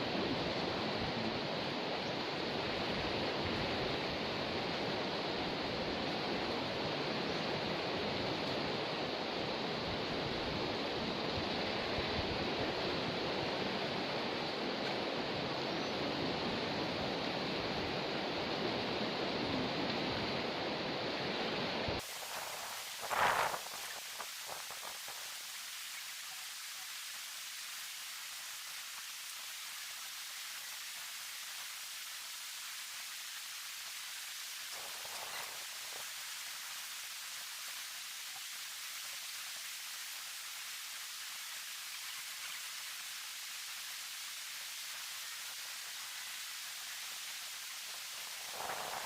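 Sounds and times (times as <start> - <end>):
river rushing: 0.0 - 49.0
thin hiss: 22.0 - 49.0.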